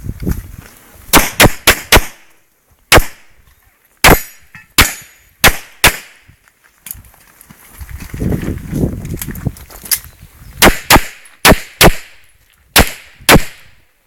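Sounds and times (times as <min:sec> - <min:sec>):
pistol shots: 0:01.1 - 0:02.3, 0:02.9 - 0:03.3, 0:04.0 - 0:06.2, 0:10.6 - 0:12.2, 0:12.8 - 0:13.8.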